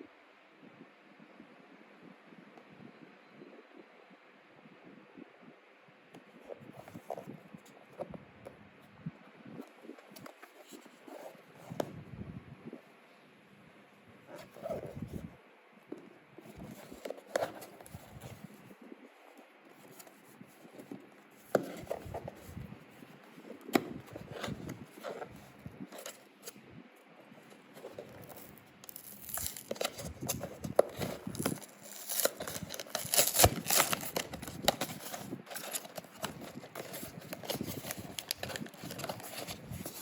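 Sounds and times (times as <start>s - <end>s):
packaging clicks and rustles: 27.7s - 40.0s
packaging crinkling and tearing: 27.9s - 40.0s.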